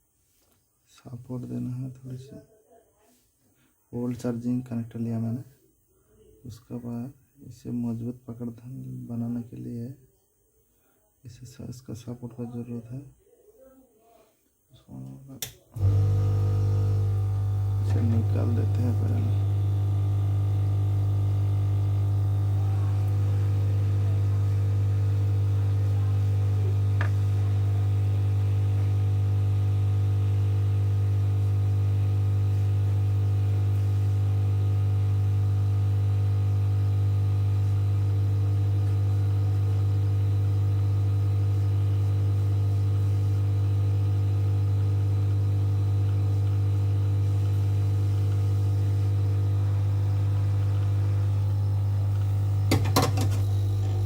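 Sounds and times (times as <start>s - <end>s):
electrical mains hum: 14.8s - 54.0s.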